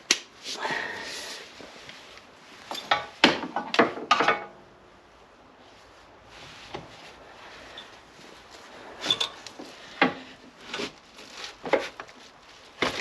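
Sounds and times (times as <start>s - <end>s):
scraping rustle: 5.6s - 13.0s.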